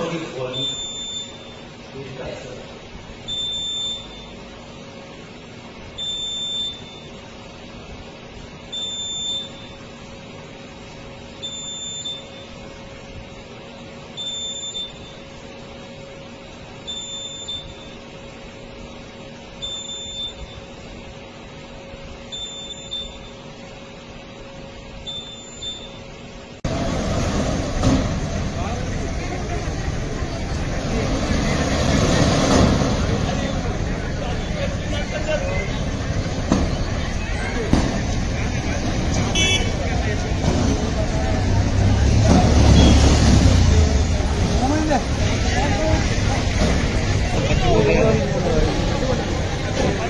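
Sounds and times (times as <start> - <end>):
steady low hum: 0.0 - 42.4
smoke alarm beeping: 0.5 - 1.8, 3.3 - 4.4, 6.0 - 7.2, 8.7 - 9.9, 11.4 - 12.6, 14.2 - 15.3, 16.9 - 18.0, 19.6 - 20.7, 22.3 - 23.5, 25.0 - 26.2.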